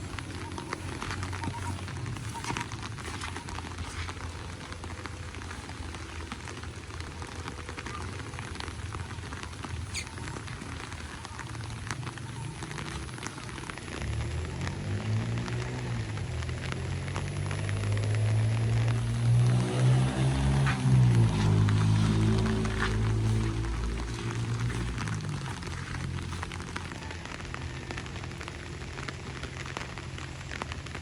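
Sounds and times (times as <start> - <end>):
rain pattering: 0.0 - 31.0
low rumble: 15.7 - 28.7.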